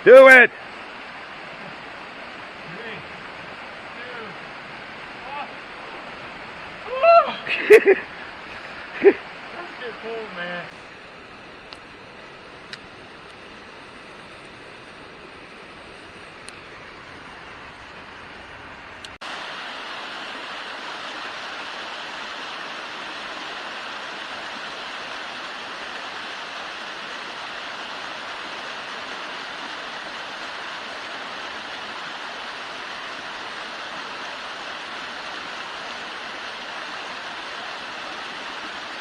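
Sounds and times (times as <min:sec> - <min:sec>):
small waterfall pouring: 0:00.3 - 0:10.9, 0:19.2 - 0:39.0.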